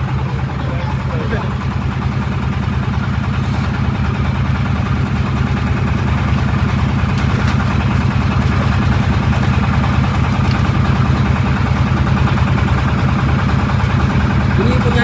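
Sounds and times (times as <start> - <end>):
engine idling: 0.0 - 15.0.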